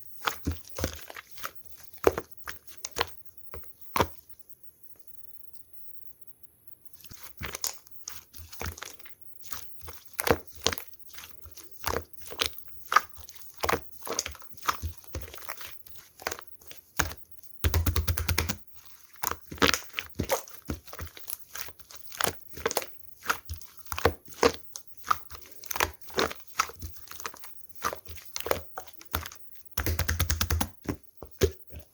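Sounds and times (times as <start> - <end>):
slime crackling and popping: 7.2 - 31.8.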